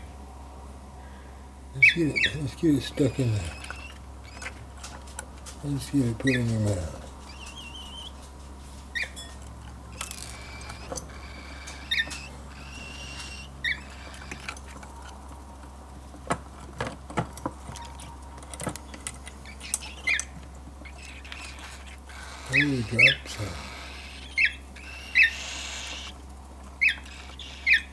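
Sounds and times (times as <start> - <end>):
baby bird high peeps: 1.8 - 4.6, 5.6 - 8.2, 10.0 - 14.5, 19.4 - 27.9.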